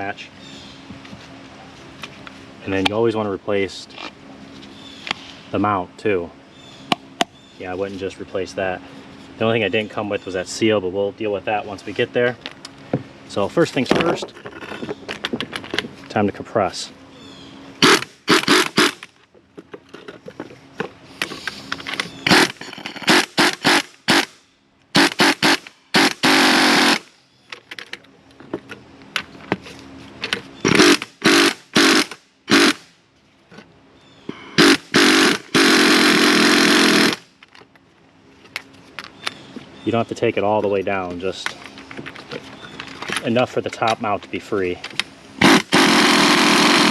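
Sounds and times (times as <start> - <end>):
impact wrench bursts: 17.8 - 19.1, 21.2 - 27.1, 30.6 - 32.9, 34.5 - 37.4, 45.4 - 46.9.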